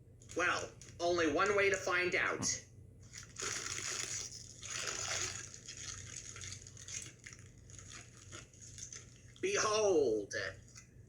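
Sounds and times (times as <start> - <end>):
faint steady hum: 0.0 - 11.0
plastic snack bag crinkling: 3.0 - 9.5.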